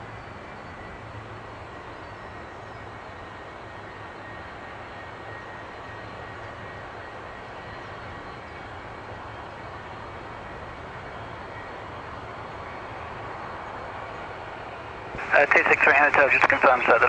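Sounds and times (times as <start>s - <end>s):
jet engine noise: 0.0s - 17.0s
high whine: 15.1s - 17.0s.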